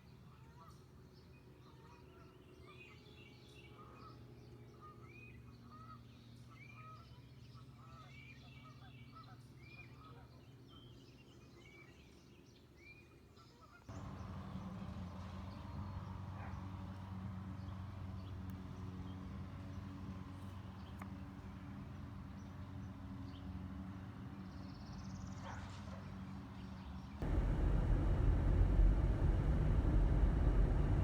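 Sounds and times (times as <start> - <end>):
low mechanical hum: 27.2 - 31.0.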